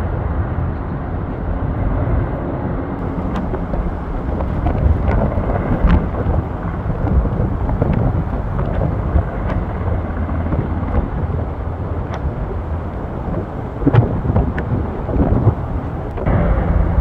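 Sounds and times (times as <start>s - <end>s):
helicopter rumble: 0.0s - 17.0s
wind buffeting microphone: 0.0s - 17.0s
faint clicks: 3.0s - 11.2s, 12.0s - 16.3s.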